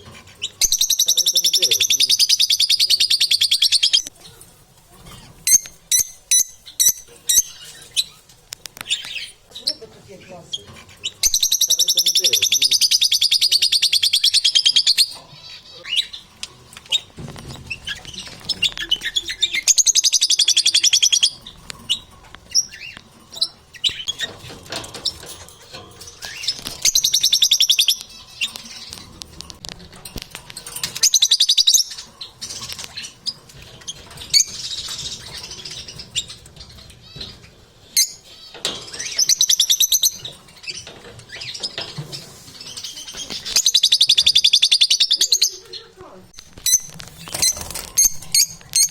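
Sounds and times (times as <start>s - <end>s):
lovebirds chirping: 0.0s - 48.9s
soft clicks and rustling: 27.9s - 31.2s.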